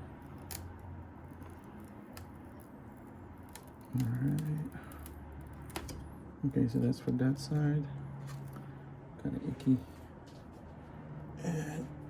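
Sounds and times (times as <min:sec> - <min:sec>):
adhesive strip peeling crackle: 0:00.2 - 0:06.0.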